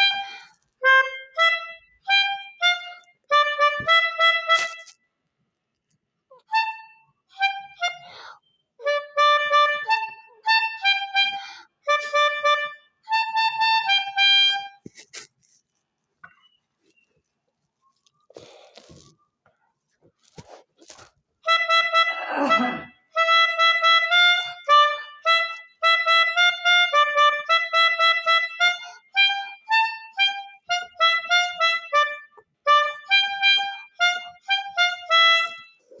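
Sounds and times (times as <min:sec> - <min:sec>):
multi-tone horn melody: 0:00.0 - 0:05.0, 0:08.8 - 0:15.3, 0:21.4 - 0:36.0.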